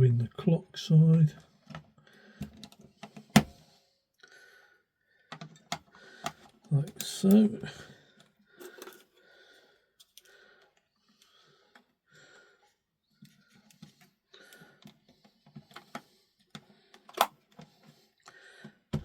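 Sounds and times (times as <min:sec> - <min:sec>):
hands handling batteries: 0:01.7 - 0:03.6, 0:08.2 - 0:09.2, 0:13.2 - 0:18.0
sharp plastic click: 0:17.1 - 0:17.4.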